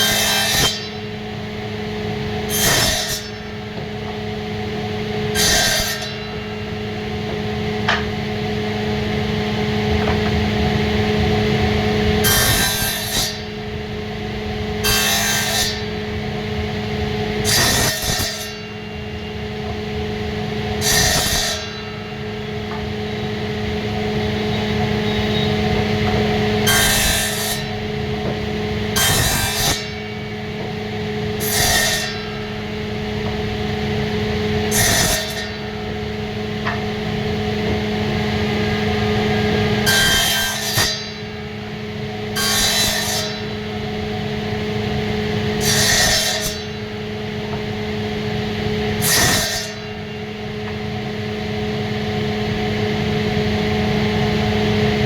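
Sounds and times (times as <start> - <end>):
steady low hum: 3.2 - 15.0, 15.7 - 40.0.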